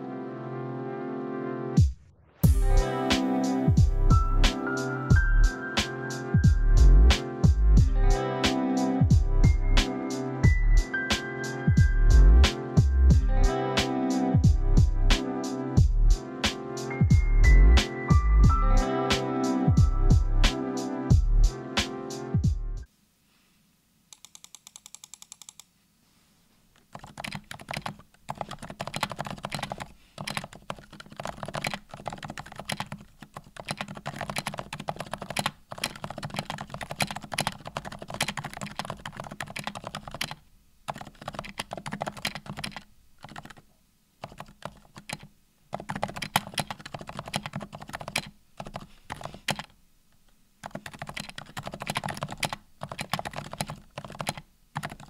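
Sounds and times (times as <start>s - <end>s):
muted keyboard typing: 24.1s - 25.7s, 26.8s - 43.6s, 44.2s - 49.8s, 50.6s - 55.0s.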